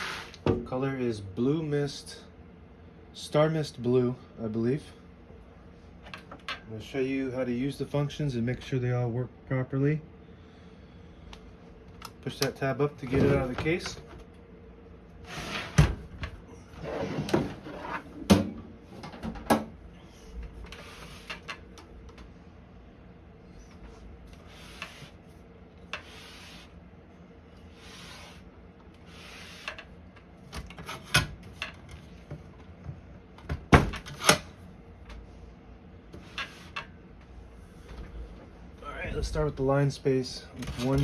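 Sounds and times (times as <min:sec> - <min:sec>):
rubbing and sliding sounds: 0:00.0 - 0:00.4, 0:15.2 - 0:15.8, 0:16.8 - 0:18.3, 0:20.6 - 0:21.6, 0:23.9 - 0:26.8, 0:27.6 - 0:29.9.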